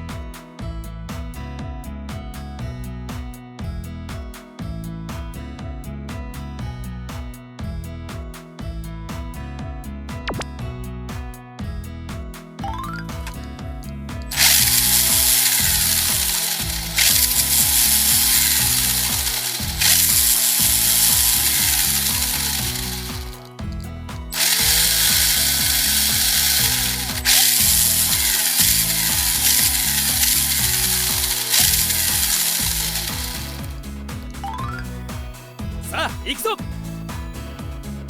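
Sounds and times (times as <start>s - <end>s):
toy car motor gear whir: 14.3s - 23.5s, 24.4s - 33.8s.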